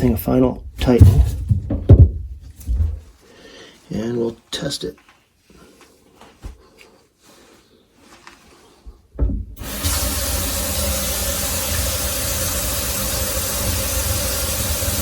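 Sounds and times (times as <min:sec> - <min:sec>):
water running into sink: 0:09.6 - 0:15.0.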